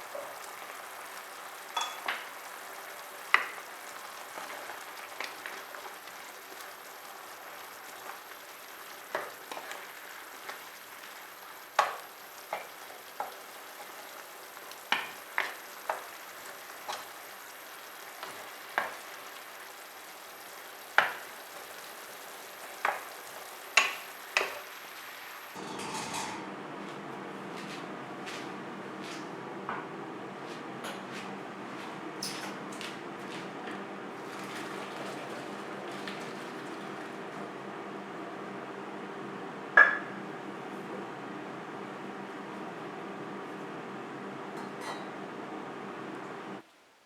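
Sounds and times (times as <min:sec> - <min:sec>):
chicken sizzling in a pan: 0:00.0 - 0:26.4, 0:33.8 - 0:46.6.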